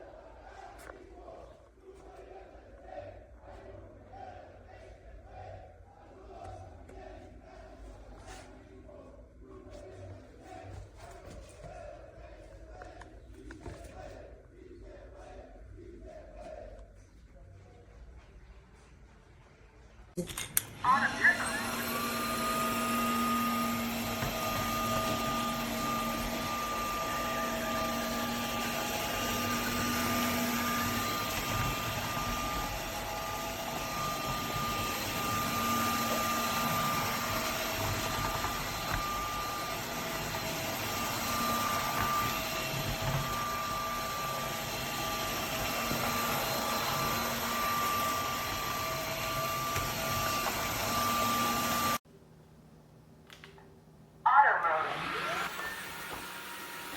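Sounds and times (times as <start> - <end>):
vacuum motor whine: 20.6 - 52.0, 54.6 - 56.9.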